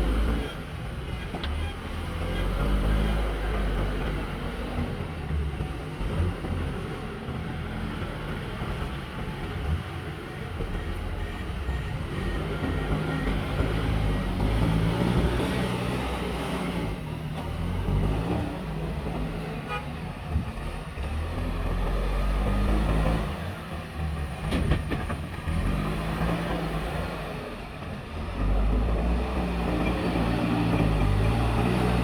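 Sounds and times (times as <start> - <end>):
diesel engine of heavy machinery: 0.0 - 32.0.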